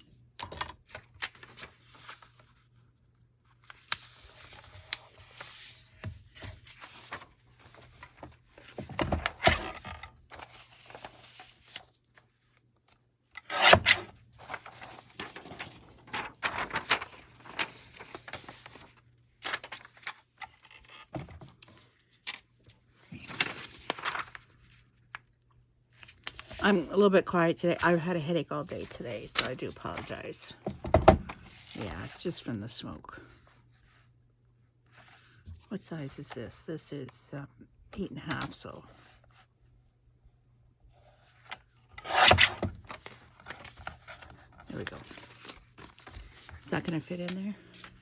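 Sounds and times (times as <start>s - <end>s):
paper rubbing and scraping: 13.5s - 18.8s.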